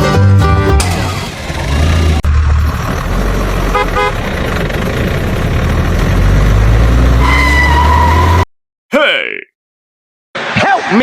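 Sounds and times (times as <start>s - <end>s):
tractor engine rumbling: 0.0s - 8.4s
horn toots: 3.7s - 4.2s, 7.2s - 8.4s.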